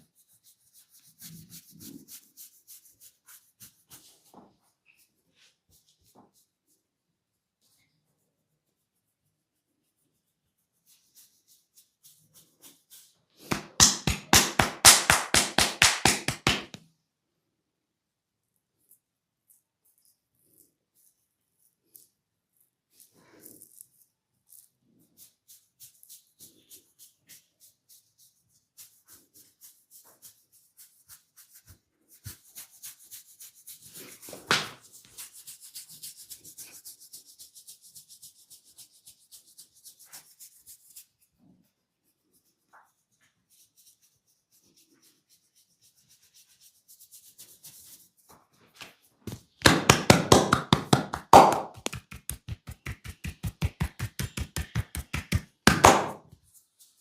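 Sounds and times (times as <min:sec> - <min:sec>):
fingers scratching scalp: 0:00.0 - 0:05.1, 0:07.8 - 0:16.6, 0:18.8 - 0:48.3, 0:49.6 - 0:56.2
rhythmic hand tapping: 0:13.5 - 0:16.8, 0:49.6 - 0:56.2.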